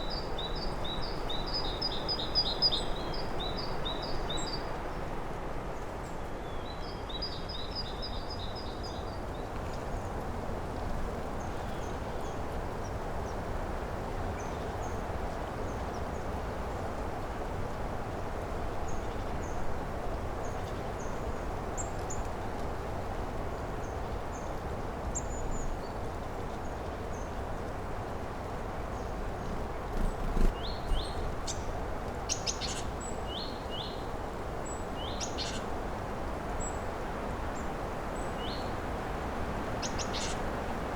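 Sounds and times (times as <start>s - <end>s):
small birds chirping: 29.0s - 35.8s, 39.8s - 40.5s.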